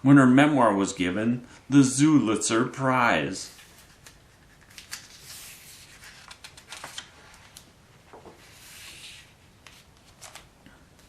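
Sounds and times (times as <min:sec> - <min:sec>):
paper page rustling: 0:03.5 - 0:10.5
faint page clicks: 0:03.6 - 0:08.3.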